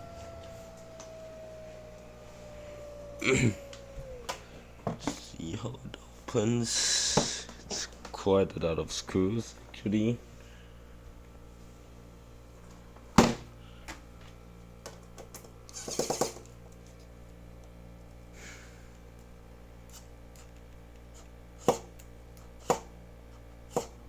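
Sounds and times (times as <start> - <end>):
steady low hum: 0.0 - 6.2.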